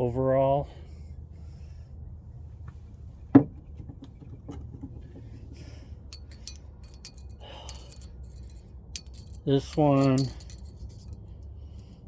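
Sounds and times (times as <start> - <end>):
steady low hum: 5.0 - 12.0
metallic clicks and clinks: 6.1 - 12.0.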